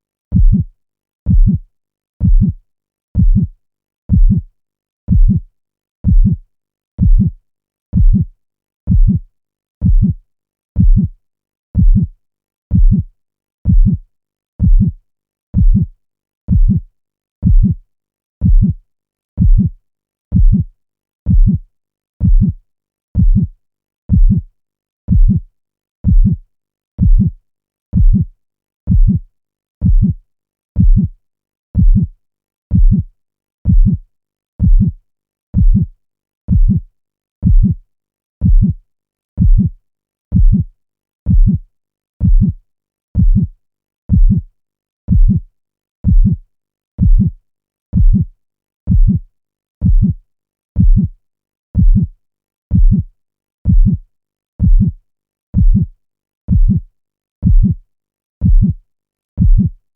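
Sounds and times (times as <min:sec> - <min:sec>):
low heartbeat thumps: 0:00.3 - 0:00.6, 0:01.3 - 0:01.6, 0:02.2 - 0:02.6, 0:03.2 - 0:03.5, 0:04.1 - 0:04.4, 0:05.1 - 0:05.4, 0:06.0 - 0:06.4, 0:07.0 - 0:07.3, 0:08.0 - 0:08.2, 0:08.9 - 0:09.2, 0:09.8 - 0:10.1, 0:10.8 - 0:11.1, 0:11.8 - 0:12.1, 0:12.7 - 0:13.0, 0:13.7 - 0:14.0, 0:14.6 - 0:14.9, 0:15.6 - 0:15.8, 0:17.4 - 0:17.8, 0:19.4 - 0:19.7, 0:20.3 - 0:20.6, 0:21.3 - 0:21.6, 0:22.2 - 0:22.5, 0:23.2 - 0:23.5, 0:24.1 - 0:24.4, 0:25.1 - 0:25.4, 0:27.0 - 0:27.3, 0:28.0 - 0:28.2, 0:28.9 - 0:29.2, 0:29.8 - 0:30.1, 0:30.8 - 0:31.1, 0:31.8 - 0:32.1, 0:32.7 - 0:33.0, 0:33.7 - 0:34.0, 0:34.6 - 0:34.9, 0:35.6 - 0:35.8, 0:36.5 - 0:36.8, 0:37.4 - 0:37.8, 0:38.4 - 0:38.7, 0:39.4 - 0:39.7, 0:40.3 - 0:40.6, 0:41.3 - 0:41.6, 0:42.2 - 0:42.5, 0:43.2 - 0:43.4, 0:44.1 - 0:44.4, 0:45.1 - 0:45.4, 0:46.0 - 0:46.4, 0:47.0 - 0:47.3, 0:48.0 - 0:48.2, 0:48.9 - 0:49.2, 0:49.8 - 0:50.1, 0:50.8 - 0:51.1, 0:51.8 - 0:52.0, 0:52.7 - 0:53.0, 0:53.7 - 0:54.0, 0:54.6 - 0:54.9, 0:55.6 - 0:55.8, 0:56.5 - 0:56.8, 0:57.4 - 0:57.8, 0:58.4 - 0:58.7, 0:59.4 - 0:59.7.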